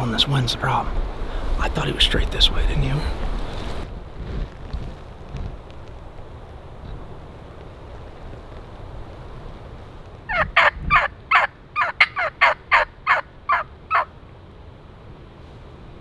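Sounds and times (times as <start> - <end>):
wind rumble on microphone: 0.0 - 11.3
turkey yelps: 10.3 - 14.1.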